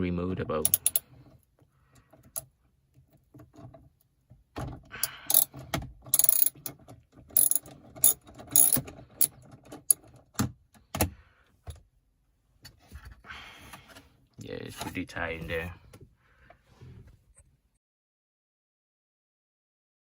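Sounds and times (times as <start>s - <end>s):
ratchet pawl clicking: 0.6s - 1.0s, 5.3s - 5.5s, 6.1s - 6.6s, 7.4s - 8.8s.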